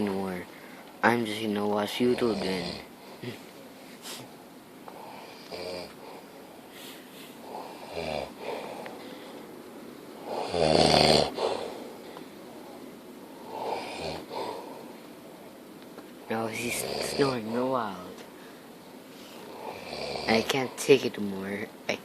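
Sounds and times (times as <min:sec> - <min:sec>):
man snoring: 0:02.0 - 0:03.4, 0:05.0 - 0:06.2, 0:07.4 - 0:09.0, 0:10.2 - 0:12.0, 0:13.4 - 0:14.9, 0:16.5 - 0:17.6, 0:19.4 - 0:20.9.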